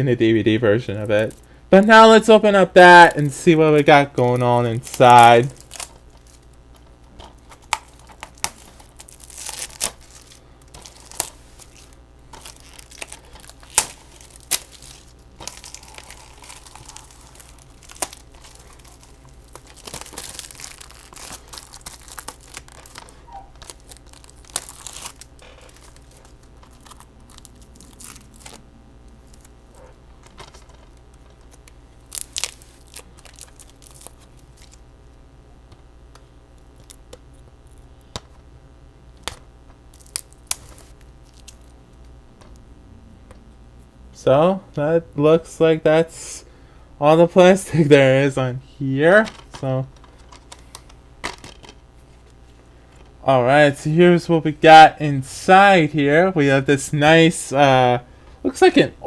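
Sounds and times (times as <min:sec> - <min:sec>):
plastic wrap crinkling and tearing: 0:01.0 - 0:02.1, 0:02.8 - 0:34.9, 0:39.2 - 0:41.8, 0:49.1 - 0:53.2.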